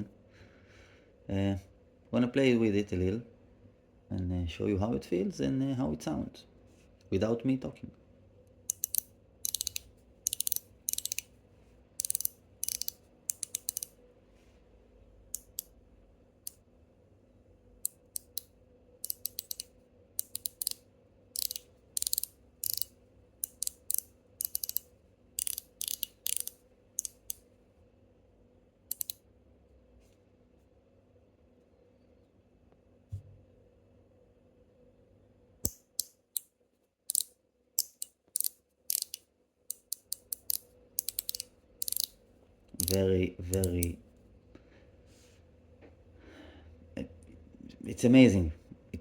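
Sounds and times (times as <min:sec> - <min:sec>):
fidget slider clicking: 0:08.6 - 0:11.3, 0:12.0 - 0:14.0, 0:15.3 - 0:15.7, 0:17.8 - 0:27.4, 0:28.9 - 0:29.2, 0:37.1 - 0:42.2, 0:42.8 - 0:44.0.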